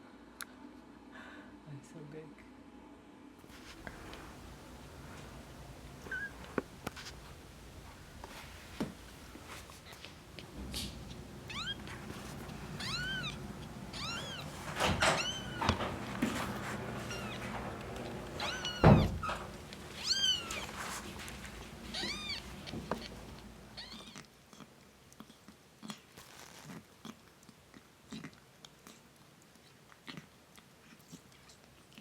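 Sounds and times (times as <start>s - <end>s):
kitten mewing: 10.8s - 15.6s, 19.9s - 24.2s.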